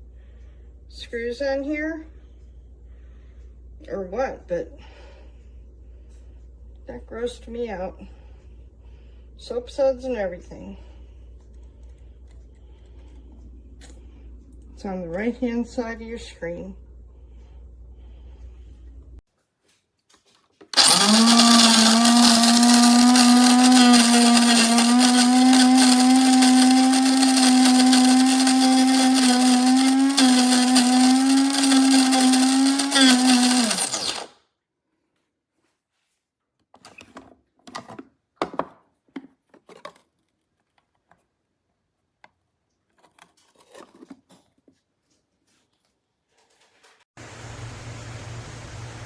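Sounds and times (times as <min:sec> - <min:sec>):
coffee grinder motor humming: 0:20.8 - 0:34.3.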